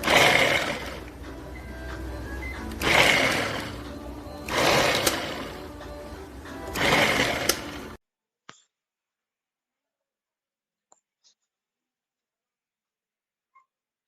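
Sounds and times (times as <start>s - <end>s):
food chopper motor whirring: 0.0s - 5.8s, 6.6s - 8.0s.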